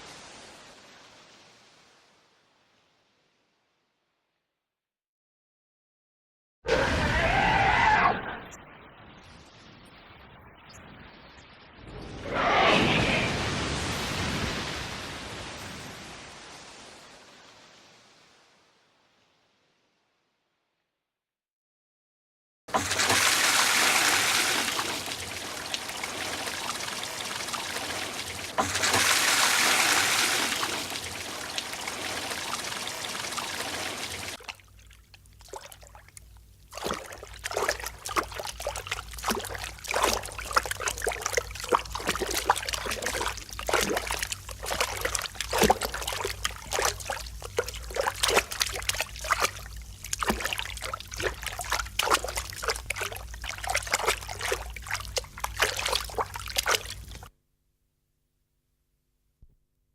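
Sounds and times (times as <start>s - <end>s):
water rushing: 0.0s - 2.0s, 12.2s - 18.4s, 22.7s - 57.3s
water dripping and splashing: 22.7s - 57.3s
low steady hum: 30.4s - 57.4s.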